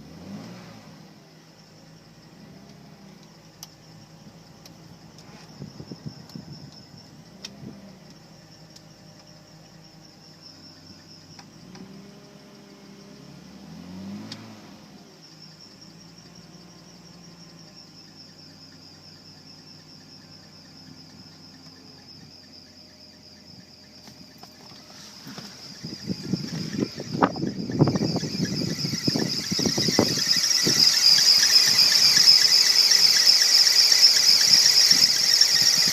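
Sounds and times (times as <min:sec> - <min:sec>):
car engine idling and revving: 0:00.0 - 0:35.9
high-pitched drive belt squeal: 0:00.0 - 0:35.9.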